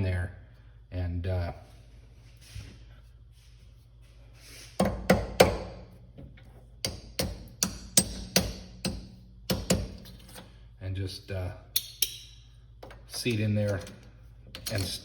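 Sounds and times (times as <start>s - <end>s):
hammer tapping metal: 6.8s - 10.4s, 11.8s - 12.5s.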